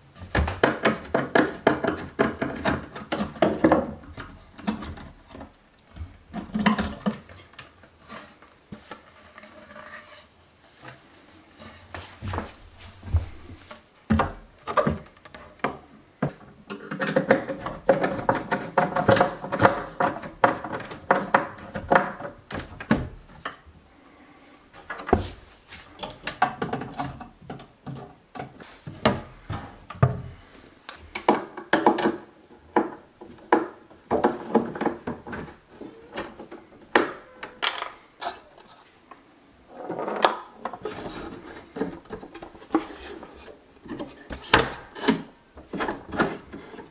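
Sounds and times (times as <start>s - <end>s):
rubbing or scraping on wood: 8.0s - 13.8s, 39.7s - 46.9s
knocks and thunks on wood: 12.2s - 15.1s.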